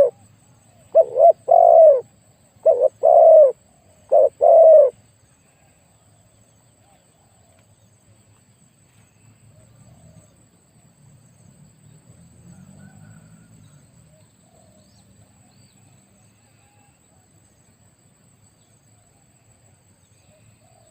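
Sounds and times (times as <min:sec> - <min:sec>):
faint bird chirps: 0:00.0 - 0:08.0, 0:12.5 - 0:17.6.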